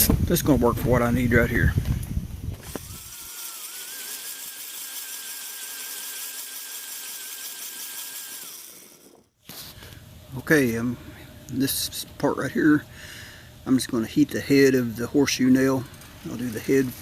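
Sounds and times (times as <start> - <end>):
small electric motor whine: 2.5 - 10.0.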